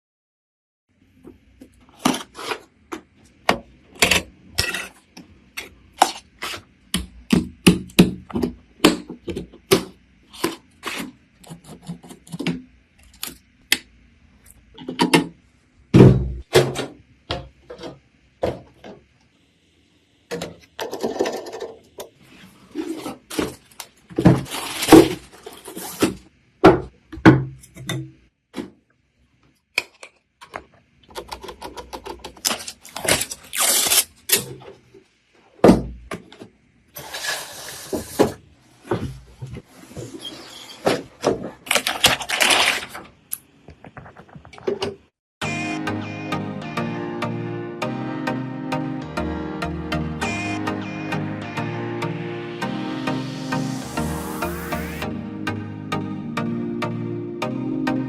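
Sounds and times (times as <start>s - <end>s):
rubbing or sliding: 37.0s - 41.2s.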